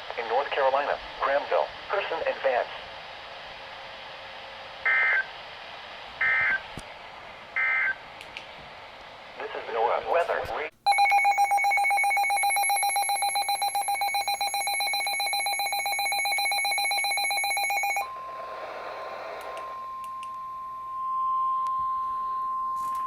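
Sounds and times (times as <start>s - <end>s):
buzzy alarm beeping: 10.9s - 23.0s
steady alarm tone: 10.9s - 23.0s.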